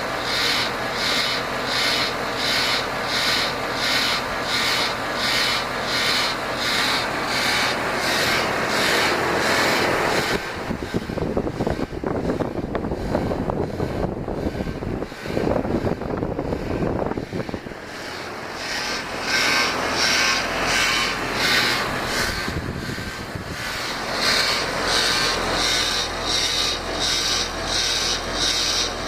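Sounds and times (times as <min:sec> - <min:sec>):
scratchy rasping rubbing: 0:00.2 - 0:29.0
low rumbling noise: 0:07.0 - 0:25.0.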